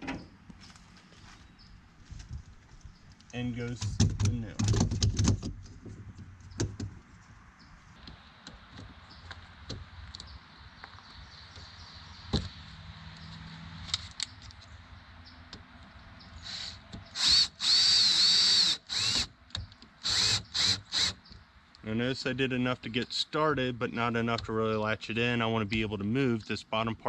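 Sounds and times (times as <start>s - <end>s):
lock parts clicking and knocking: 3.8s - 5.5s
power drill driving screws: 16.4s - 19.3s, 20.0s - 21.2s.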